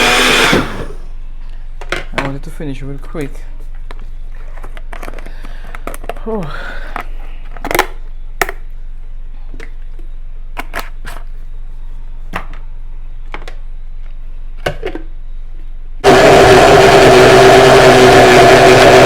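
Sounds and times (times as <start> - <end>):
blender running: 0.0 - 1.0, 16.0 - 19.0.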